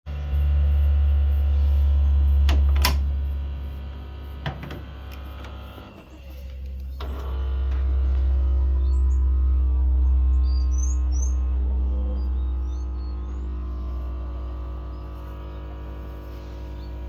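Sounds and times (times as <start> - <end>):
loud steady low hum: 0.1 - 17.0.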